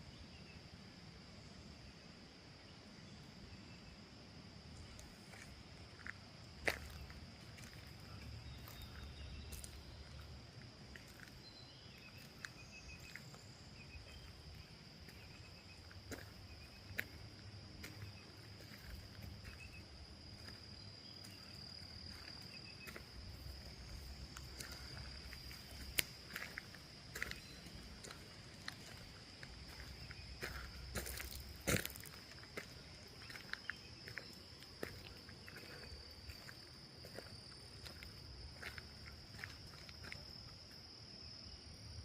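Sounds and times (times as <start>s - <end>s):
insects trilling: 0.0s - 42.0s
faint chirps: 6.7s - 10.3s, 10.9s - 17.2s.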